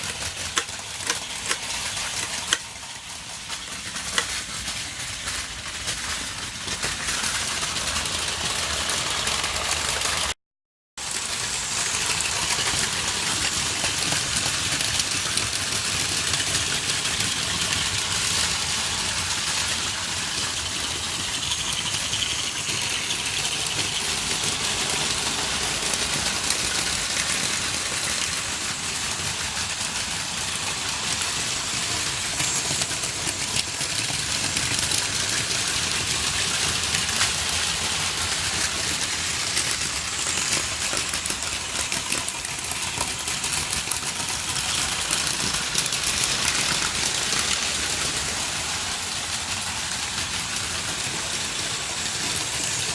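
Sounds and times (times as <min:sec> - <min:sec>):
toy train wheels clattering: 0:00.0 - 0:10.4, 0:11.0 - 0:52.9
small electric motors whirring: 0:11.1 - 0:52.9.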